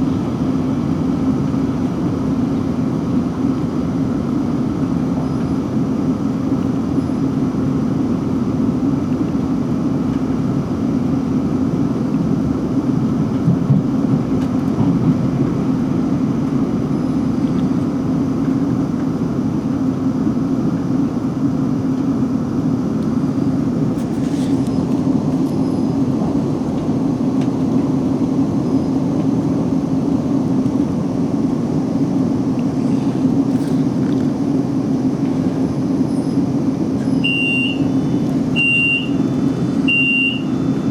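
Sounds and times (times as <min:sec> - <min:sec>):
train interior rumble: 0:00.0 - 0:40.9.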